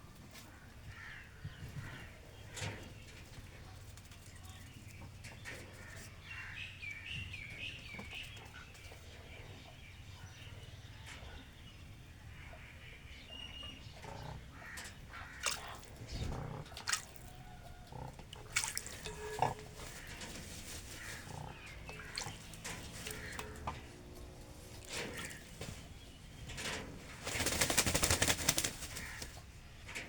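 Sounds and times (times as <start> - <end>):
birds splashing in water: 14.4 - 29.8.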